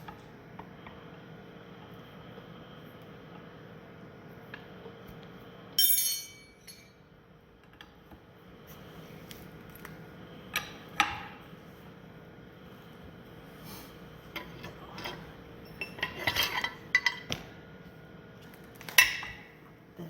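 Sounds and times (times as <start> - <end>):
loud ringing metal clank: 5.8 - 6.9
metal tools clinking: 5.8 - 7.0.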